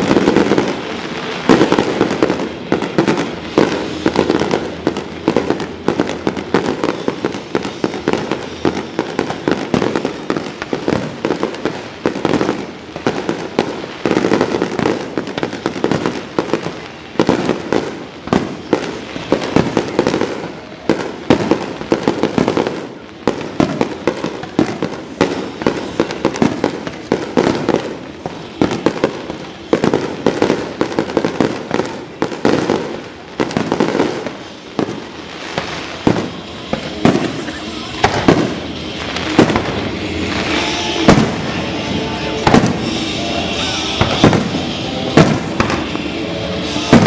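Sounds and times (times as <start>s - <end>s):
fireworks bursting: 0.0s - 47.0s
music over loudspeakers: 34.8s - 47.0s.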